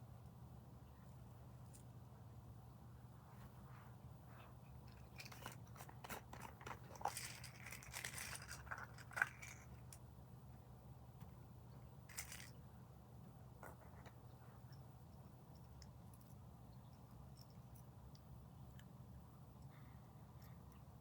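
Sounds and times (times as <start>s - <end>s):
low steady hum: 0.0s - 21.0s
rustling: 12.1s - 12.6s.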